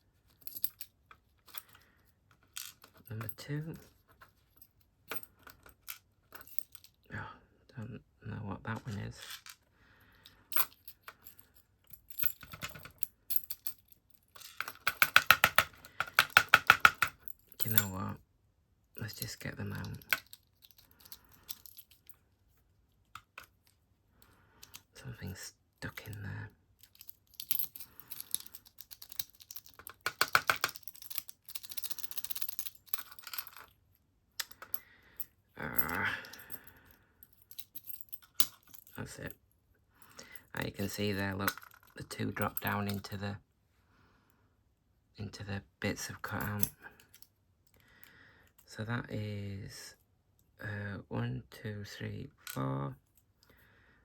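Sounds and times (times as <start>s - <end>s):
metal lock parts clicking: 10.5s - 18.0s, 19.2s - 22.2s, 23.1s - 23.8s, 25.9s - 33.8s, 37.3s - 38.9s
tool clicking in a lock: 14.4s - 17.9s, 26.8s - 33.6s.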